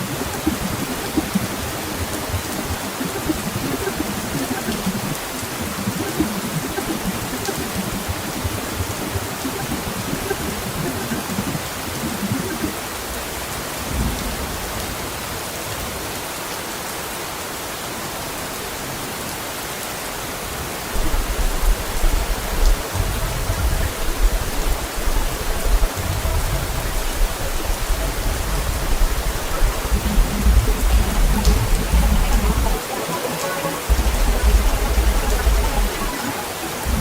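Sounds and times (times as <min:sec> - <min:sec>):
steady rain falling: 0:00.0 - 0:37.0
low uneven rumble: 0:26.0 - 0:32.8.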